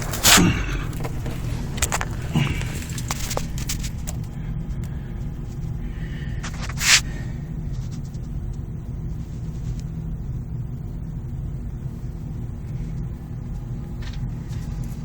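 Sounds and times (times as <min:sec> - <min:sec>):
drain snake cable rumbling: 0:00.0 - 0:08.5
loud scrape: 0:06.4 - 0:07.1.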